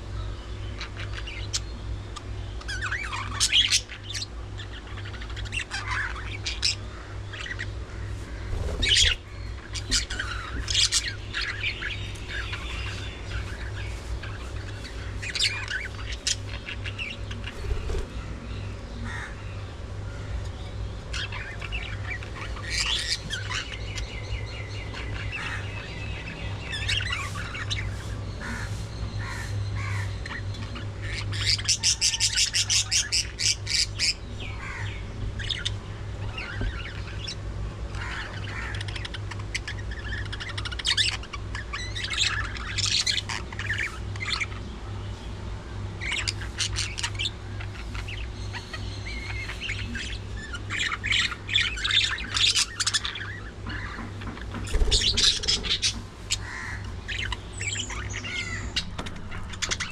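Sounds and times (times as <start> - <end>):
budgerigars chirping and squawking: 0.0 - 59.9
bird sharp repeated calls: 46.0 - 59.9.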